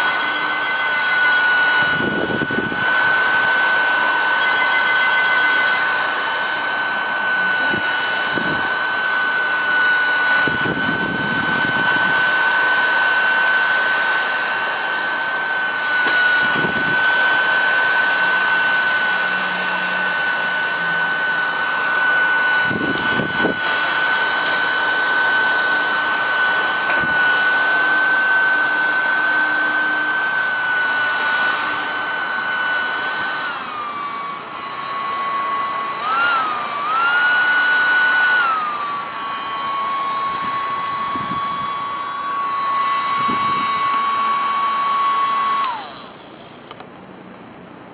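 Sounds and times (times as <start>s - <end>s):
small vacuum motor whining: 0.0s - 47.9s
rushing air: 20.2s - 24.9s.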